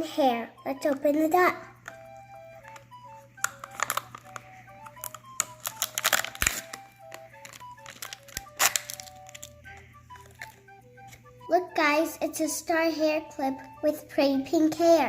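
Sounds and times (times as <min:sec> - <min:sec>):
plinking background melody: 0:00.0 - 0:15.0
wrapper crinkling and tearing: 0:02.6 - 0:11.1.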